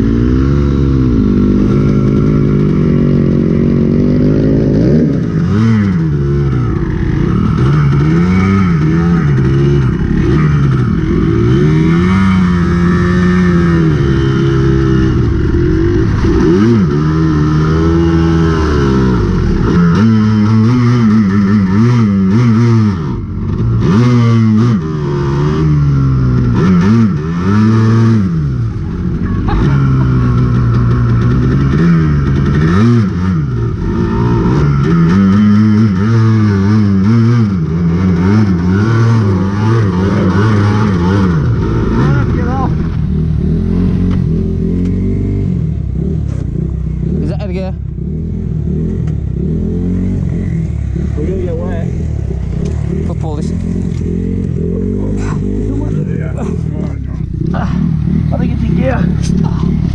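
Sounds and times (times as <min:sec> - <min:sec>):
dirt bike engine revving: 0:00.0 - 0:59.9.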